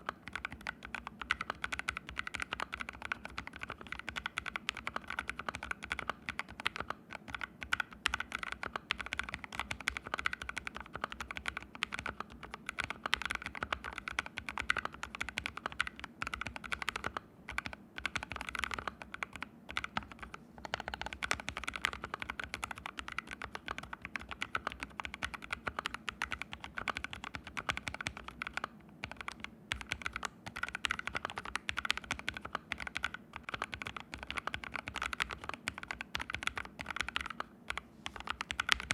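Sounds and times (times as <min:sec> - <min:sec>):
fast mechanical keyboard typing: 0:00.0 - 0:38.9.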